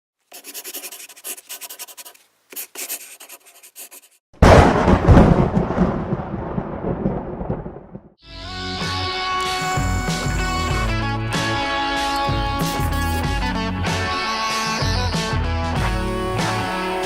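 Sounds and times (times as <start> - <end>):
heavy rumbling boom: 4.4 - 8.1.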